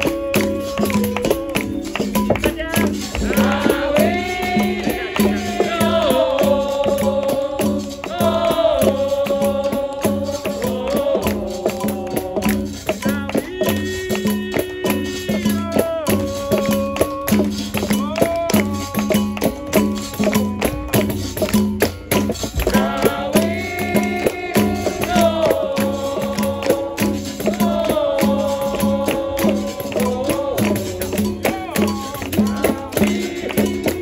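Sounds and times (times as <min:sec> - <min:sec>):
voices singing: 0:00.0 - 0:21.5, 0:22.4 - 0:34.0
berimbau: 0:00.0 - 0:34.0
pandeiro: 0:00.0 - 0:34.0.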